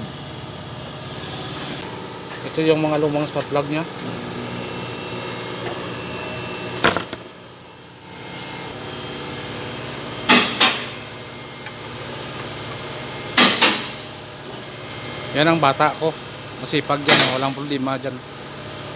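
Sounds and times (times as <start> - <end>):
workshop hum: 0.0 - 18.9
metallic clinks of tools: 1.8 - 2.4.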